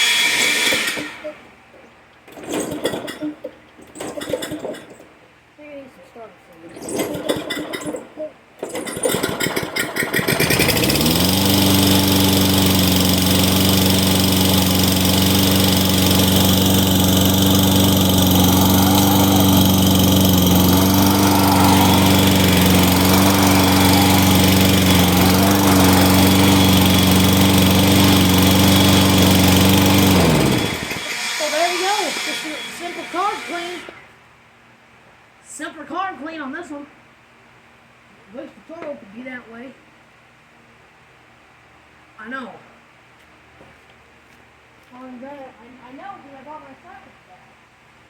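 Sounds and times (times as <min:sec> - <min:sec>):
lawn mower engine starting and running: 0:00.0 - 0:01.6, 0:02.2 - 0:05.1, 0:06.8 - 0:34.2.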